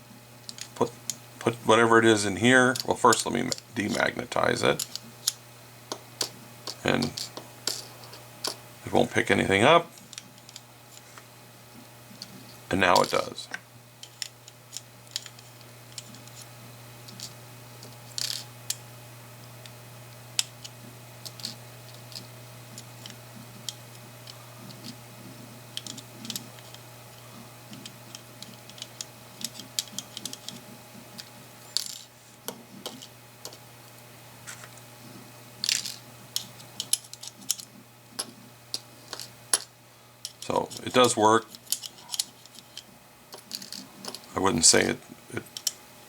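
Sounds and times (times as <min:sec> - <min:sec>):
steady low hum: 0:00.0 - 0:46.0
small screws clinking on metal: 0:06.2 - 0:08.6, 0:18.1 - 0:18.8, 0:21.2 - 0:23.2, 0:31.2 - 0:32.1, 0:35.6 - 0:44.3, 0:45.5 - 0:45.8.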